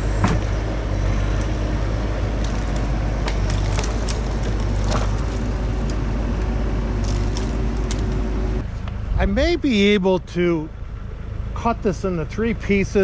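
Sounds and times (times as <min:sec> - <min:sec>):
excavator diesel engine running: 0:00.0 - 0:13.0
sharp cracks and knocks: 0:02.4 - 0:06.0.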